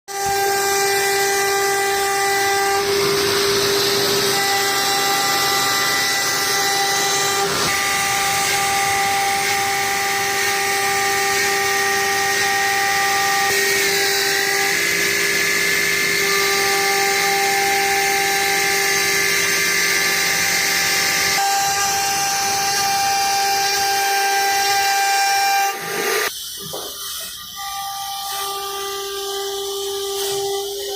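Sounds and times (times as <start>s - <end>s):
hiss of bit carving wood: 0.1s - 30.9s
router spindle whining: 0.1s - 30.9s.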